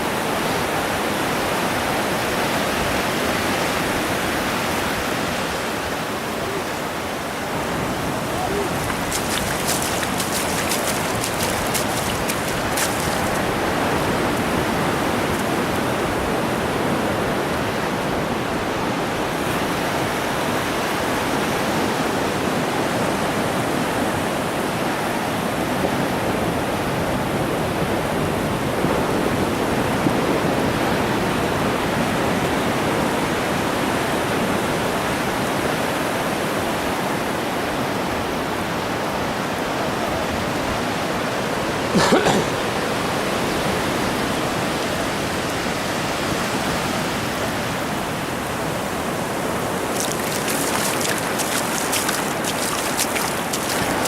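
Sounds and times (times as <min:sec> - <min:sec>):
ocean surf rushing on beach: 0:02.8 - 0:18.3, 0:48.5 - 0:54.0.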